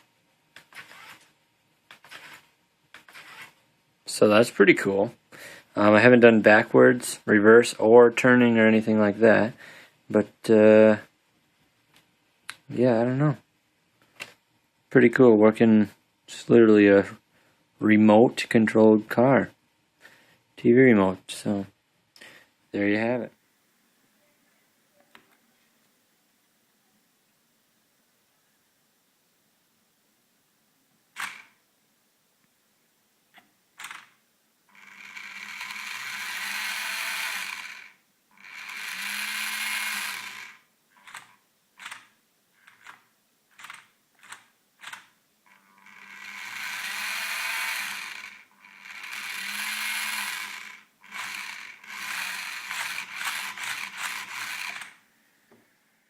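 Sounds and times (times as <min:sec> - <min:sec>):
toy car motor whirring: 0:00.6 - 0:01.3, 0:01.9 - 0:03.6, 0:31.2 - 0:31.6, 0:34.7 - 0:43.0, 0:43.6 - 0:55.0.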